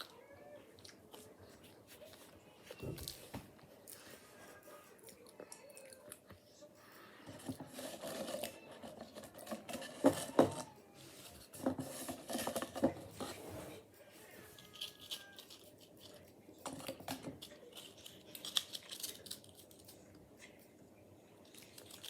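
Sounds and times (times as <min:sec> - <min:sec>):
potato chips crunching: 0:14.7 - 0:20.0, 0:21.4 - 0:22.0.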